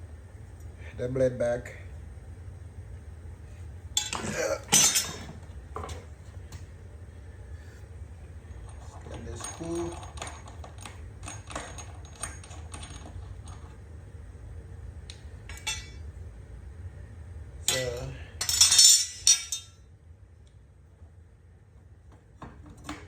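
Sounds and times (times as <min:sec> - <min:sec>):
metal parts clinking and knocking: 0:04.0 - 0:06.0, 0:08.6 - 0:13.8, 0:15.5 - 0:16.0, 0:17.7 - 0:19.8.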